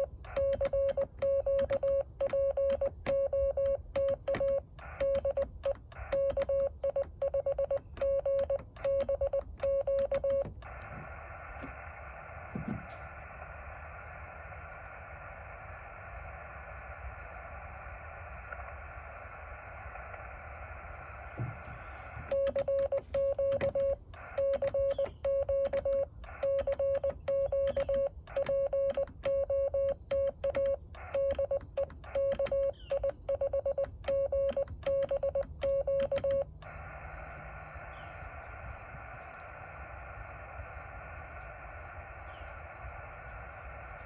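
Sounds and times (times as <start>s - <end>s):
radio static hiss: 0.0s - 2.2s, 3.8s - 30.1s, 30.8s - 44.0s
morse code sidetone: 0.0s - 11.8s, 19.3s - 41.4s.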